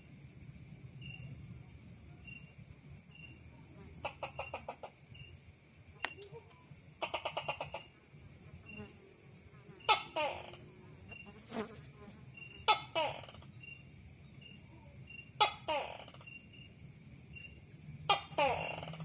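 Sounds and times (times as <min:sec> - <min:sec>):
animal call with rattling pulses: 0:18.1 - 0:19.0.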